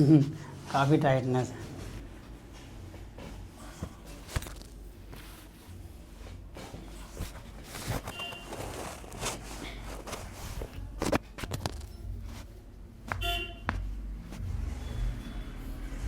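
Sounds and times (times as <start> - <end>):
low steady hum: 0.0 - 16.0
soft rustling: 0.1 - 12.7.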